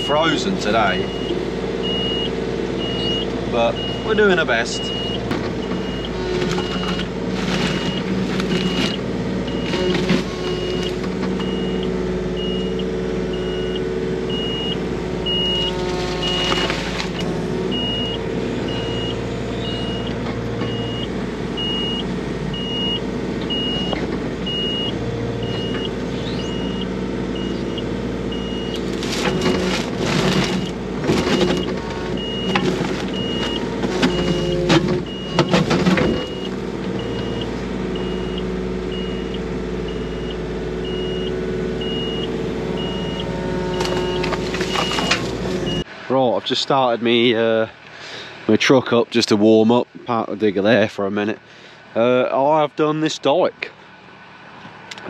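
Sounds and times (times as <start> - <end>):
digger diesel engine under load: 0.0 - 55.0
high warning beeps: 4.8 - 5.2
bucket scraping frozen soil: 6.2 - 9.0, 15.6 - 17.2, 28.8 - 31.6.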